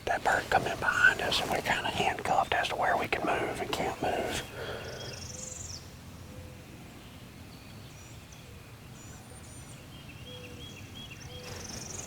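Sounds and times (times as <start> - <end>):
low outdoor rumble: 0.0 - 6.1
songbirds chirping: 0.0 - 12.0.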